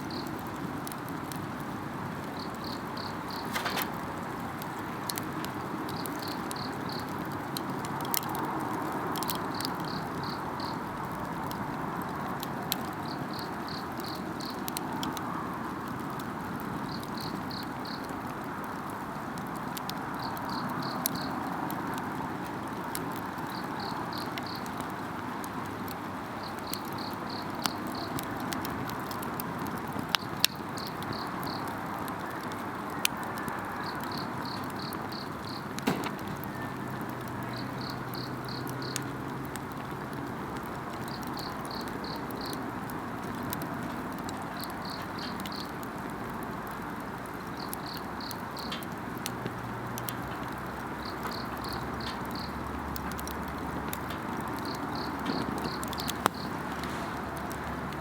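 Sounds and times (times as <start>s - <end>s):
campfire crackling and popping: 0.0s - 58.0s
insect chirping: 2.4s - 4.0s, 54.6s - 56.5s.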